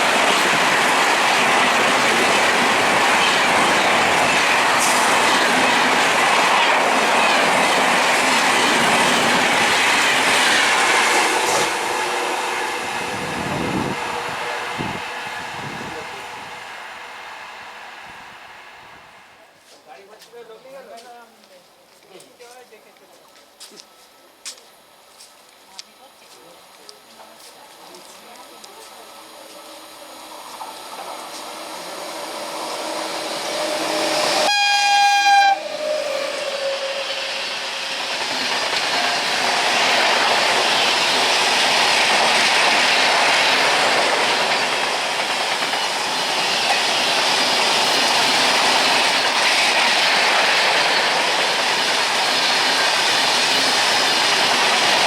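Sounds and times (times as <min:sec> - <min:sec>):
train rumble and wheel clatter: 0:00.0 - 0:24.2, 0:24.9 - 0:55.0
train horn blast: 0:10.9 - 0:16.4, 0:32.7 - 0:37.7.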